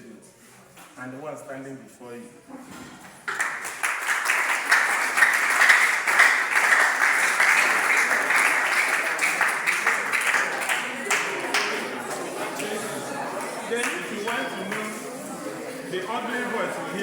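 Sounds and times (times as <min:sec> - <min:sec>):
audience applauding loudly: 0:03.3 - 0:15.1.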